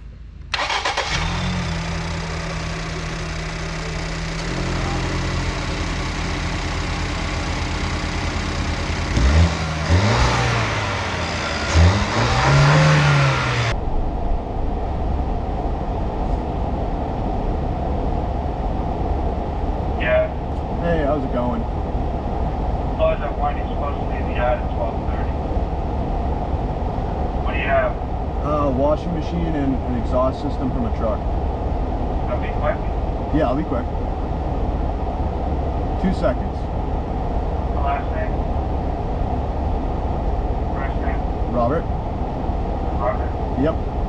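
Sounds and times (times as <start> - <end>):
car engine running and revving: 0.5 - 13.8.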